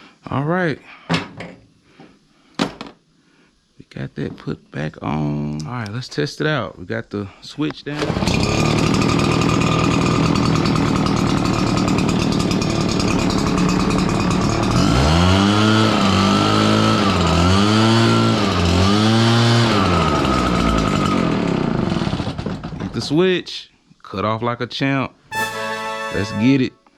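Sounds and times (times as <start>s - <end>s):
leaf blower engine revving: 8.0s - 22.5s.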